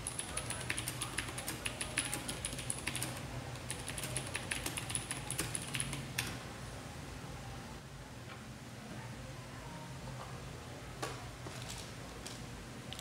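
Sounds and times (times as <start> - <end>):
fast typing on mechanical keyboard: 0.0 - 6.4.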